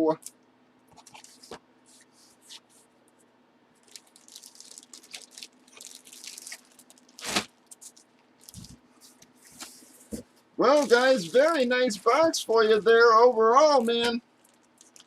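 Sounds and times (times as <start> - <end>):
plastic card sleeves rustling: 10.6 - 12.0.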